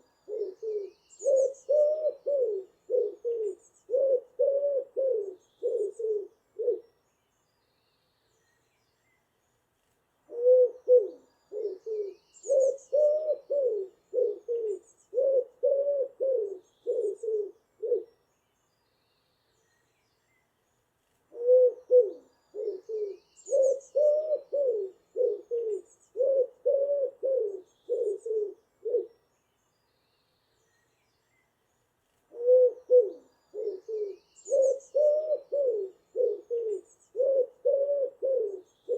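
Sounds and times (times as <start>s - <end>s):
faint high bird chirps: 0.0s - 4.2s, 10.3s - 15.4s, 21.4s - 26.4s, 27.3s - 37.6s
pigeon cooing: 0.0s - 6.8s, 10.3s - 18.1s, 21.3s - 29.1s, 32.3s - 38.9s.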